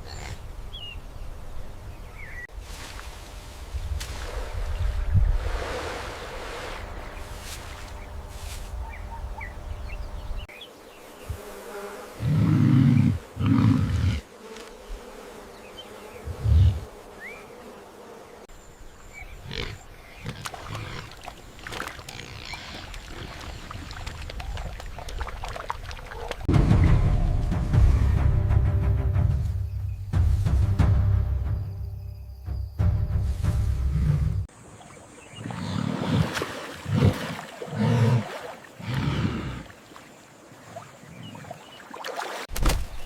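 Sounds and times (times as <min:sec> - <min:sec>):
buzzing and chirping ambience: 0:06.2 - 0:23.4
animal growls: 0:12.2 - 0:14.2.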